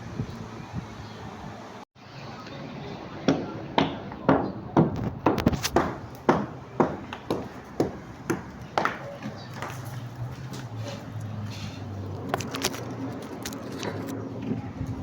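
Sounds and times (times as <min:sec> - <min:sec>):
hammer blows ringing: 0:03.3 - 0:09.8.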